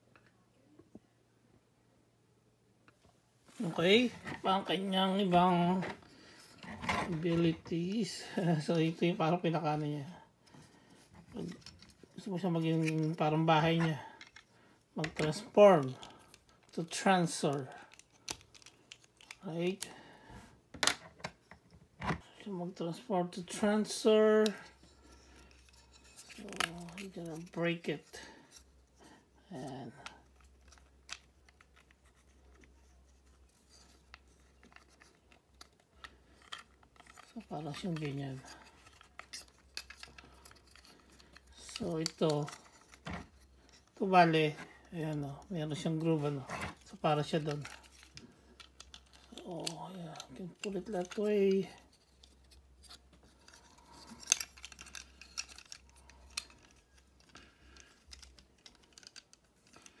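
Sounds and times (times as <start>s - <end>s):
plastic toy parts clicking: 17.9s - 19.4s, 36.4s - 43.9s, 47.2s - 51.2s, 51.8s - 60.0s.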